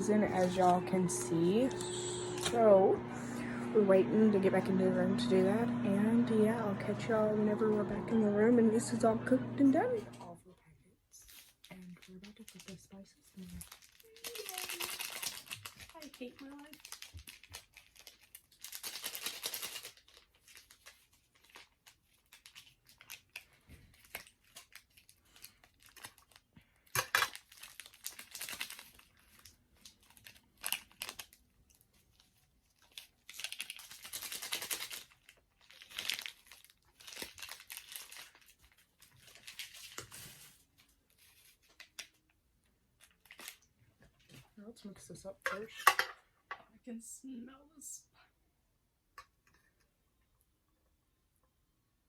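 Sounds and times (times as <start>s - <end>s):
packets tearing and crinkling: 11.3s - 42.2s, 43.0s - 43.7s.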